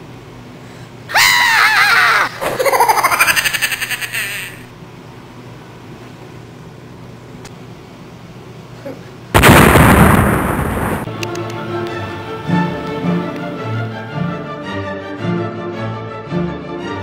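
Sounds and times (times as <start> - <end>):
loud explosion-like blast: 9.4 - 11.1
music with held notes: 11.1 - 17.0.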